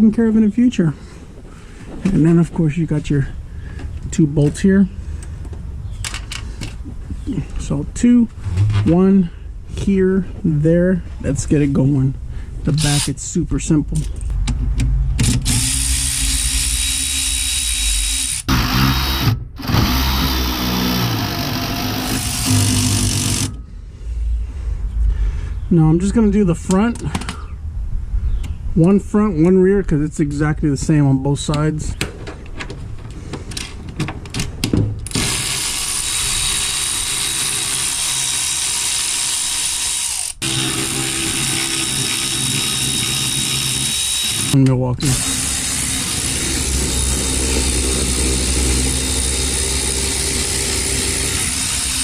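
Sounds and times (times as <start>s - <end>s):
sharp clicks and knocks: 13.9s - 15.7s, 31.5s - 35.3s
cordless power tool running: 15.3s - 23.6s, 35.1s - 52.0s.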